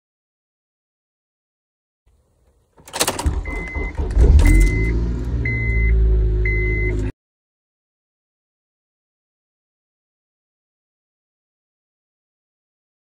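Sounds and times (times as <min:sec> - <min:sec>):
car engine cranking and idling: 0:02.4 - 0:07.1
dashboard warning chime beeps: 0:03.2 - 0:07.1.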